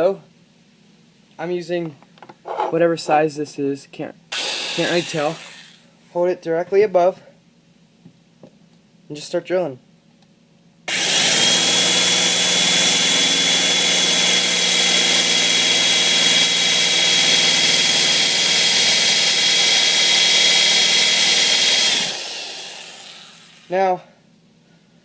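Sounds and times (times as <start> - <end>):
electric drill whining: 4.3 - 5.8, 10.9 - 23.7.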